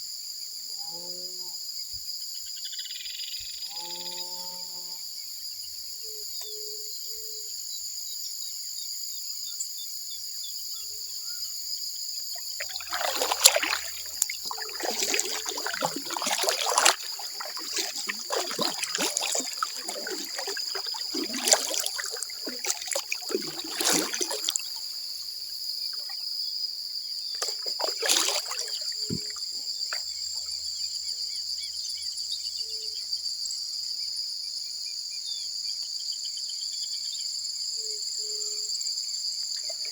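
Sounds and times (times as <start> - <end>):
insects chirping: 0.0 - 39.9
paddle splashing in water: 12.4 - 25.2, 27.4 - 30.2.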